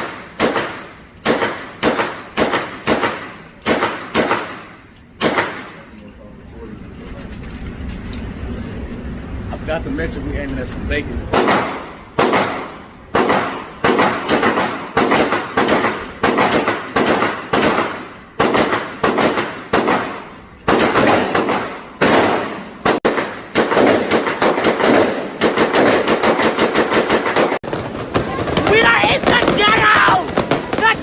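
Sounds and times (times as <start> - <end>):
gunshots with echo: 0.0 - 6.0, 11.3 - 31.0.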